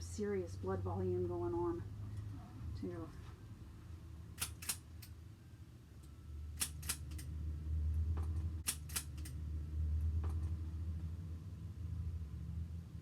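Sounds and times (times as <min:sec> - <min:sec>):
low steady hum: 0:00.0 - 0:13.0
sharp clicks: 0:04.4 - 0:05.1, 0:06.6 - 0:07.3, 0:08.2 - 0:09.4.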